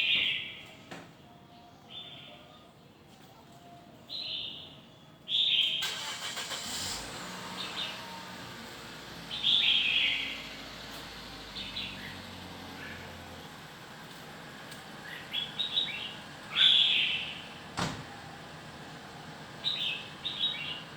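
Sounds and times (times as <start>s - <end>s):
bird singing bright phrases: 0.0s - 2.7s, 4.0s - 5.8s, 9.3s - 10.5s, 11.5s - 13.6s, 14.9s - 17.6s, 19.5s - 20.9s
motor vehicle noise with low hum: 6.5s - 20.9s.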